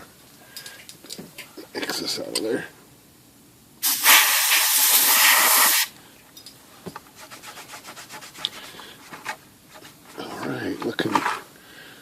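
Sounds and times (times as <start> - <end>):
compressed air hissing: 3.8 - 6.0
faint rubbing strokes: 7.1 - 10.3.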